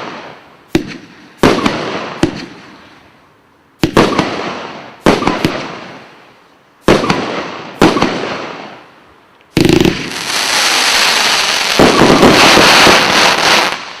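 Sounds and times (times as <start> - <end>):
firework bangs: 0.0 - 2.8, 3.8 - 6.1, 6.8 - 8.8, 9.5 - 14.0
firework barrage: 0.0 - 3.0, 3.8 - 6.2, 6.8 - 8.9, 9.5 - 14.0.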